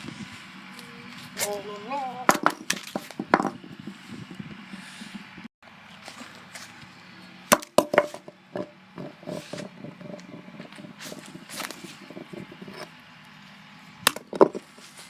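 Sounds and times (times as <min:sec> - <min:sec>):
rocks hitting phone and ground: 0:02.3 - 0:03.6, 0:07.5 - 0:12.9, 0:14.0 - 0:14.8.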